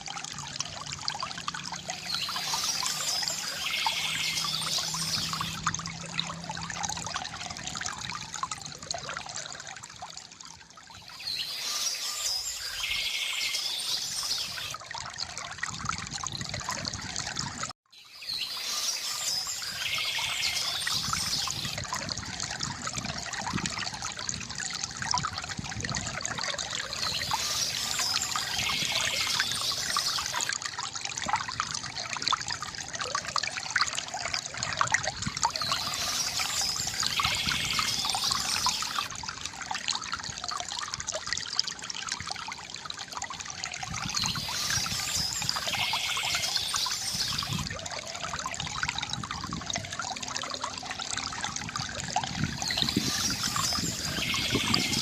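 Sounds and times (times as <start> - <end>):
river water gurgling: 0.0 - 55.0
high bird chirping: 35.5 - 39.1, 44.2 - 47.6, 52.6 - 55.0.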